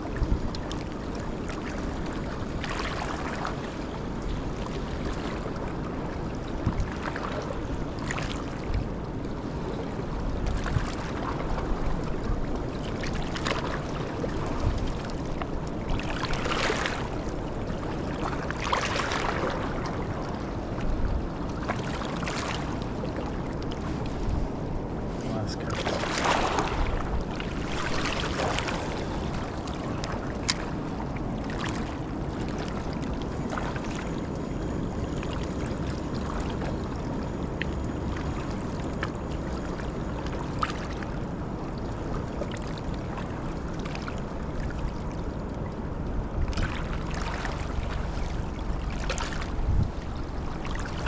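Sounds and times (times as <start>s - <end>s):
river rushing: 25.1s - 33.8s.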